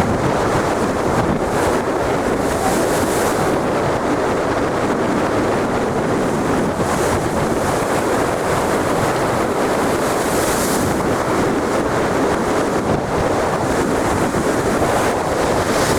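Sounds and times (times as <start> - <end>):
heavy surf: 0.0 - 15.9
wind buffeting microphone: 0.0 - 15.9.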